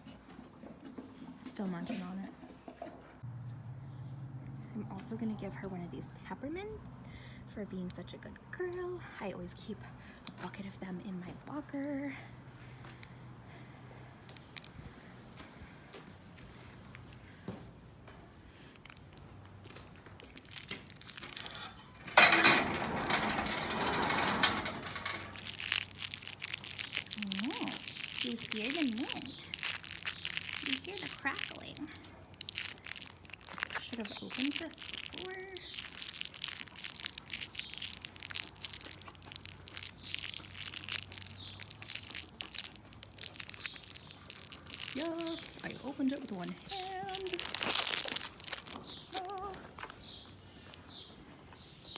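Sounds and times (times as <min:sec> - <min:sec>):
cellophane wrapper crinkling: 0:18.6 - 0:22.0, 0:25.0 - 0:50.9
candies clicking and rattling: 0:20.2 - 0:21.5, 0:25.0 - 0:49.9.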